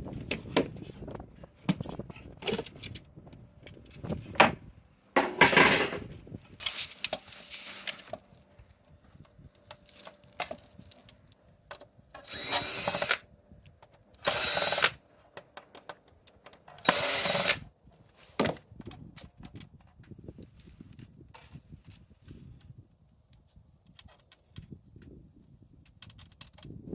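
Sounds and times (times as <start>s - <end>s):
handling clicks and knocks: 5.2s - 6.2s, 15.3s - 16.8s
cordless power drill running: 12.2s - 13.2s, 14.2s - 15.0s, 16.8s - 17.6s.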